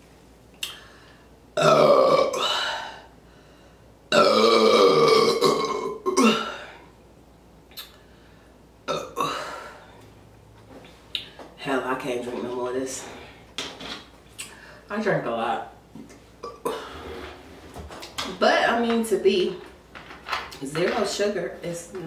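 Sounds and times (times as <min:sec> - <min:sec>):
woman burping: 0:01.6 - 0:03.1, 0:04.1 - 0:06.8, 0:08.9 - 0:09.8, 0:16.4 - 0:17.0.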